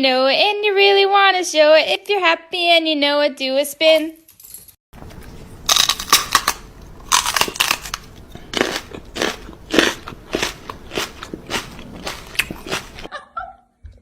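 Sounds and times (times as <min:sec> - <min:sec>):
dog chewing crunchy object: 0:05.7 - 0:13.1.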